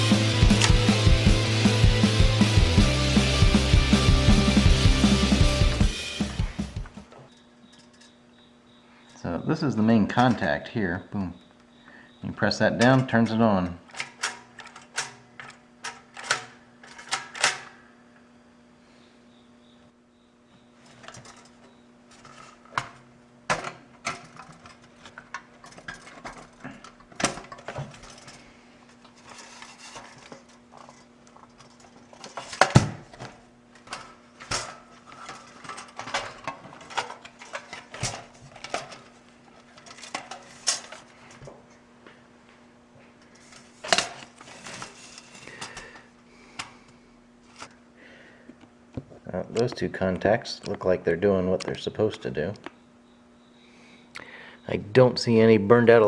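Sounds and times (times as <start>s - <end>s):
metal toaster parts clinking: 12.8s - 17.8s, 20.9s - 28.4s, 33.8s - 41.1s, 43.4s - 45.8s.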